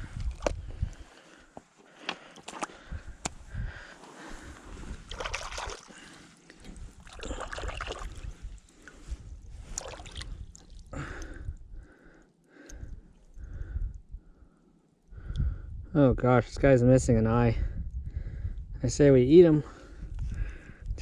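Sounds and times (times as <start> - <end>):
water splashing and sloshing: 1.9 - 3.0, 4.1 - 11.2.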